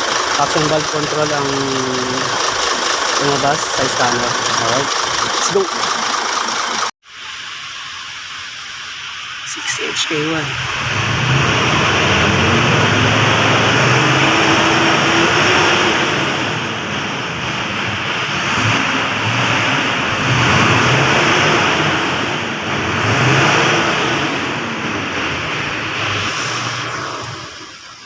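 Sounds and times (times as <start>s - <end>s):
diesel truck engine accelerating: 0.0s - 7.0s, 9.6s - 27.8s.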